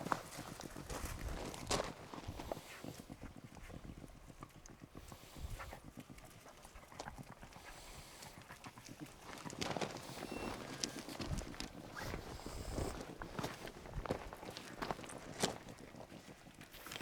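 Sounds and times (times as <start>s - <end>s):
footsteps walking on ground: 0.0s - 2.6s, 9.1s - 16.0s.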